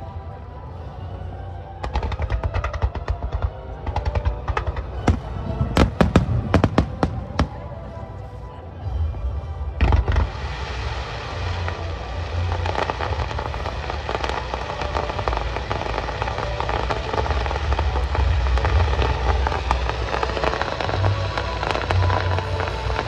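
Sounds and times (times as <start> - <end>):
fireworks booming: 1.8 - 7.8
fireworks crackling and popping: 1.8 - 7.9, 9.8 - 23.0.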